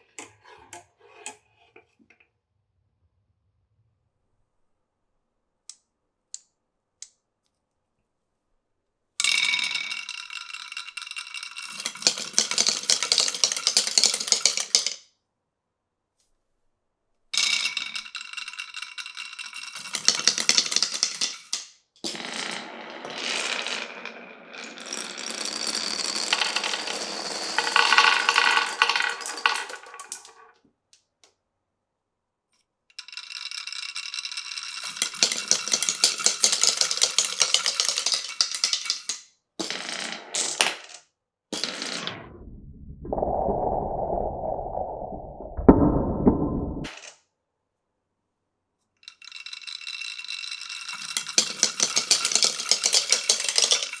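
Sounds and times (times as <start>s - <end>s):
marbles rolling and rattling: 9.2s - 15.0s, 17.4s - 30.6s, 32.9s - 41.0s, 49.0s - 54.0s.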